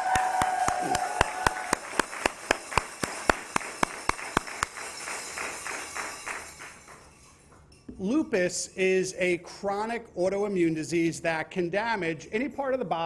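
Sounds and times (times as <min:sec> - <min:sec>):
audience clapping in rhythm: 0:00.0 - 0:07.2.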